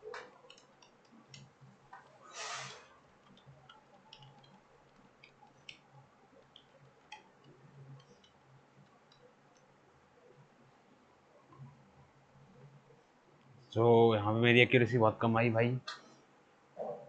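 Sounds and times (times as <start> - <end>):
faint low hum: 0.0 - 17.0
computer mouse clicking: 0.1 - 2.2, 3.2 - 9.7.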